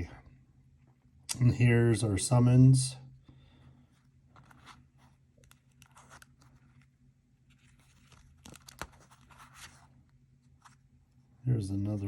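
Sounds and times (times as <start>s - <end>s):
trading cards rustling and sliding: 3.9s - 11.0s.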